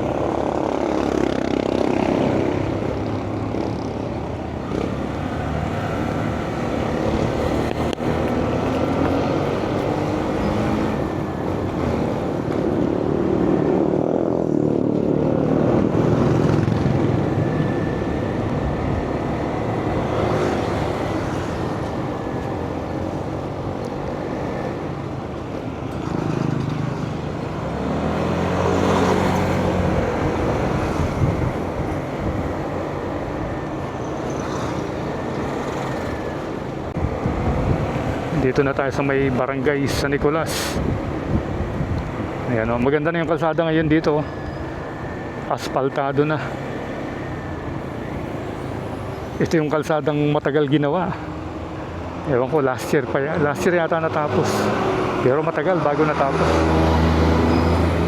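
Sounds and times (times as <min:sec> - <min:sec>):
road noise: 0:00.0 - 0:58.0.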